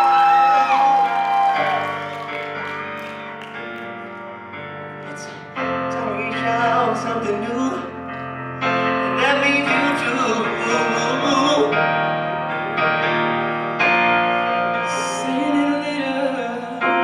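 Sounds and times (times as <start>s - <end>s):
keyboard playing chords: 0.0s - 17.0s
person singing: 5.0s - 17.0s.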